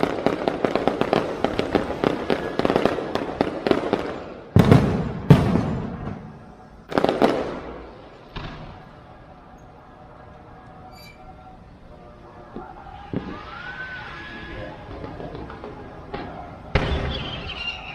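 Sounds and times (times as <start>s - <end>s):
fireworks crackling pops: 0.0s - 9.0s, 12.5s - 17.9s
fireworks heavy bangs: 0.0s - 9.1s, 12.6s - 17.9s.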